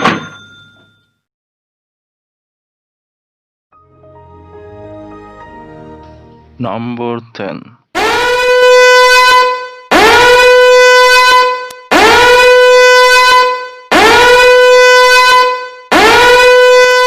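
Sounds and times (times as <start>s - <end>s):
horn blasts: 8.0s - 17.0s.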